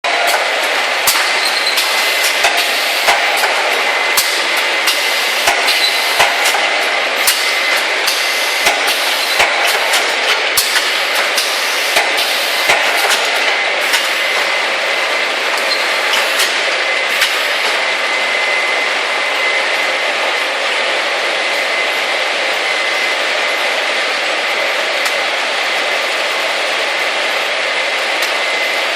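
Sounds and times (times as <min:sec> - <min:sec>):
bundling machine running: 0:00.0 - 0:28.9
sharp machine clicks and knocks: 0:00.2 - 0:14.5.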